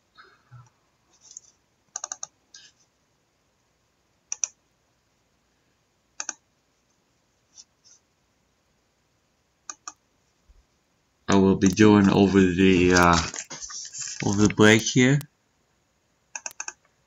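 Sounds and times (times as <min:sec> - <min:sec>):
computer keyboard clicks: 0:01.3 - 0:02.3, 0:04.3 - 0:04.6, 0:06.2 - 0:06.4, 0:09.7 - 0:10.0, 0:16.4 - 0:16.9.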